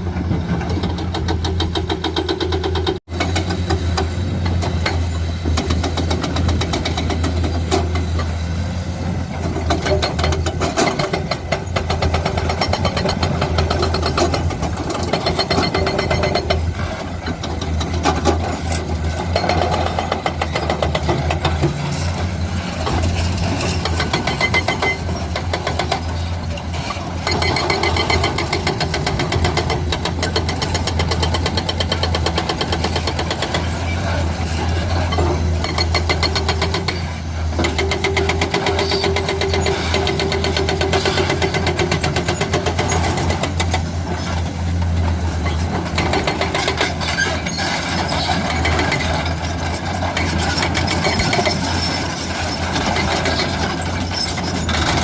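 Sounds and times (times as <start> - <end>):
heavy diesel engine knocking: 0.2 - 22.3, 27.2 - 44.1.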